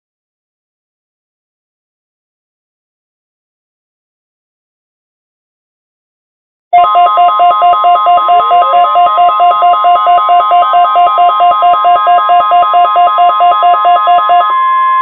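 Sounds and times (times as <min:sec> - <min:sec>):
steady alarm tone: 0:06.8 - 0:15.0
warbling alarm tone: 0:06.8 - 0:15.0.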